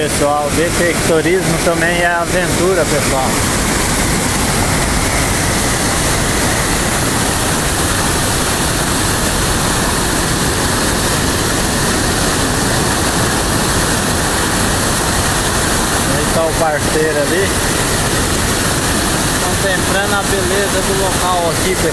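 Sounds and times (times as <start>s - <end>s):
waterfall roaring: 0.0s - 21.9s.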